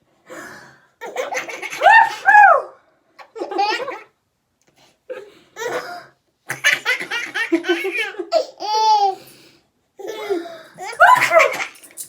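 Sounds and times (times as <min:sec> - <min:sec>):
baby laughing: 0:01.0 - 0:04.1, 0:06.5 - 0:09.2, 0:10.0 - 0:12.0
baby squealing: 0:10.8 - 0:11.9.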